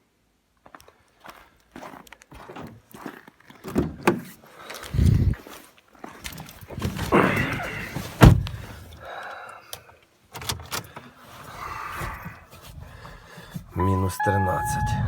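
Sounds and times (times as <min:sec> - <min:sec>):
car door shutting: 0:07.4 - 0:08.7.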